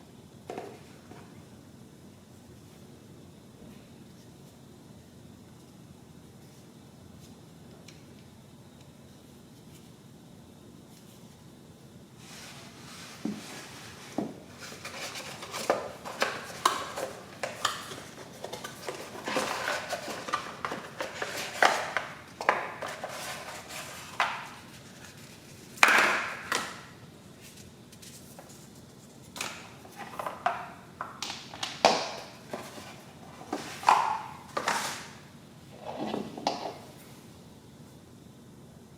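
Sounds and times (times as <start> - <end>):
cardboard and plastic packaging rustling: 12.2 - 26.8, 27.4 - 37.0.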